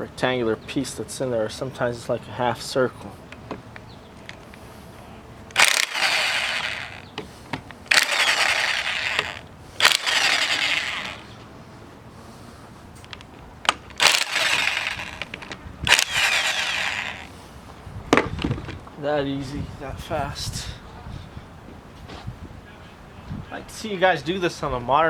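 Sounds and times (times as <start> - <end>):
impact wrench click: 5.5 - 11.3, 13.0 - 17.3
impact wrench bursts: 5.5 - 11.4, 13.7 - 17.5.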